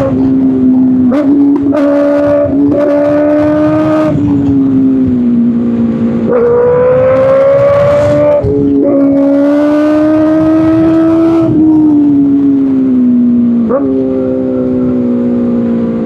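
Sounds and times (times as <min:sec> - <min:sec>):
motorcycle engine at high revs: 0:00.0 - 0:16.0.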